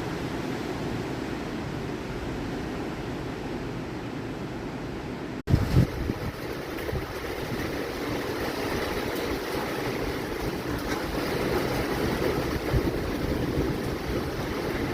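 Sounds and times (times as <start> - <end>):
wind buffeting microphone: 5.5 - 14.9.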